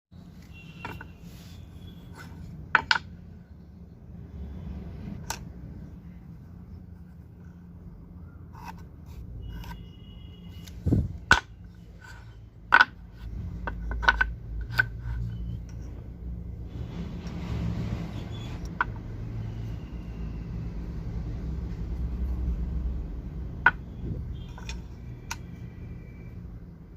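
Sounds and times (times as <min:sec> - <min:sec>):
wooden parts and tools clicking: 0:00.4 - 0:03.4, 0:08.4 - 0:16.5, 0:18.2 - 0:19.4, 0:23.2 - 0:26.9.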